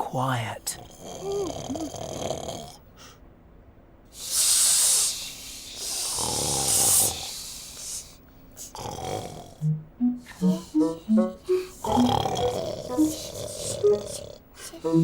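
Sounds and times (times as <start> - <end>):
rasping snore: 0.8 - 2.8, 5.8 - 7.5, 8.6 - 9.6, 11.8 - 14.5
hissing in-breath: 4.1 - 8.8.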